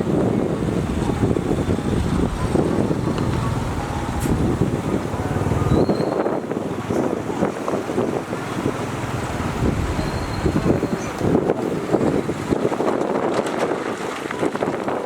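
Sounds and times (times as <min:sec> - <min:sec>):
heavy diesel machinery running: 0:00.0 - 0:13.0
high squeaks: 0:05.6 - 0:06.4, 0:09.8 - 0:11.2.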